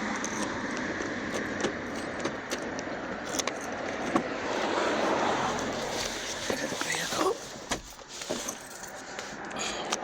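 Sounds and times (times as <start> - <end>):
keys jingling: 8.3 - 9.0.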